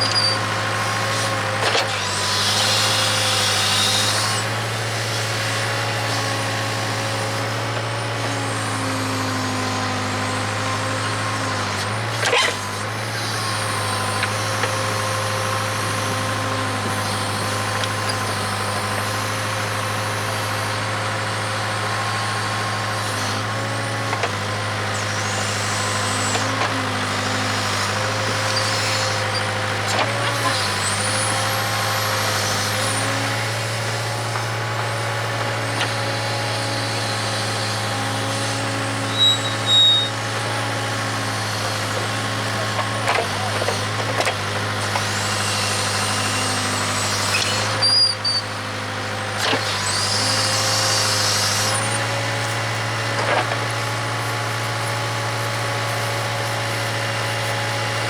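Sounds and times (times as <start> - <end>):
faint high squeals: 0.0 - 0.5, 38.8 - 40.3, 47.3 - 48.5
backhoe diesel engine running: 0.0 - 58.0.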